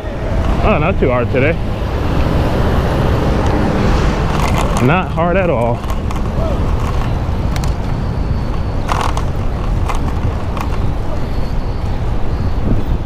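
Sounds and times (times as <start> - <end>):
wind and road noise rumble: 0.0 - 13.0
short rattles and clicks: 4.2 - 11.0.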